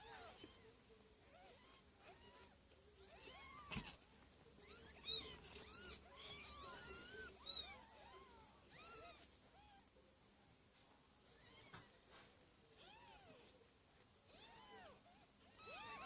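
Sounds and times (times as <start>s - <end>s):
kittens mewing: 4.6s - 9.9s, 14.3s - 16.0s.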